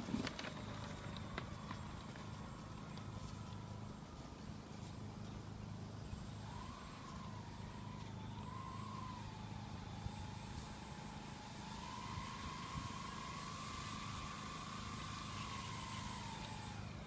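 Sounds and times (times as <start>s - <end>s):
model plane motors whining: 0.0s - 17.0s.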